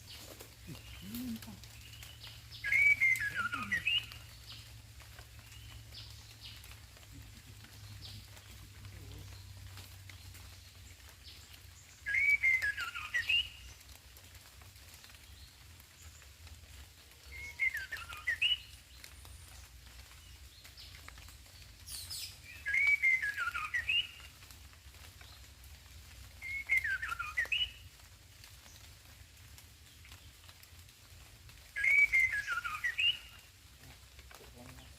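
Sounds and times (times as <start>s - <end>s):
bird singing whistled phrases: 2.5s - 4.3s, 12.1s - 13.6s, 17.3s - 18.7s, 22.0s - 24.2s, 26.4s - 27.8s, 31.8s - 33.4s.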